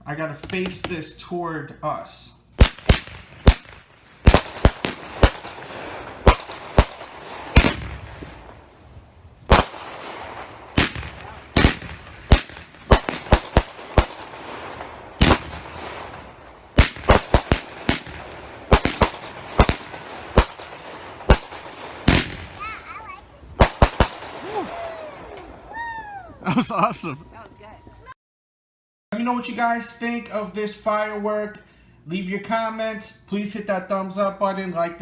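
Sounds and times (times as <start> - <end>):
firework hiss: 2.6 - 24.8
firework bangs: 2.6 - 25.9.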